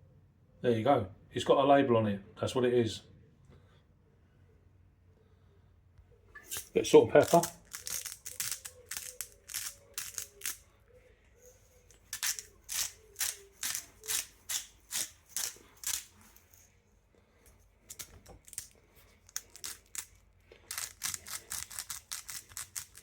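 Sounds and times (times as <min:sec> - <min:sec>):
scratchy grinding of salt and pepper: 0:06.4 - 0:10.7, 0:11.5 - 0:23.0.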